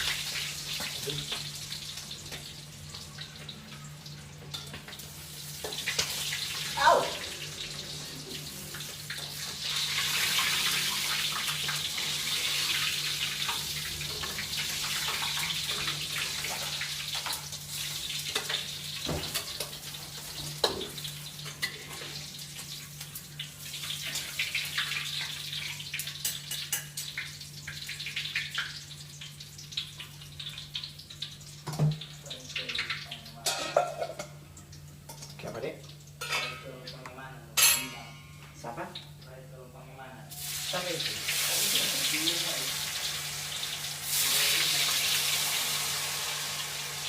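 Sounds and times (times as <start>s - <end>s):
dishes and utensils clinking: 33.4s - 34.4s, 36.2s - 36.9s, 37.6s - 38.6s.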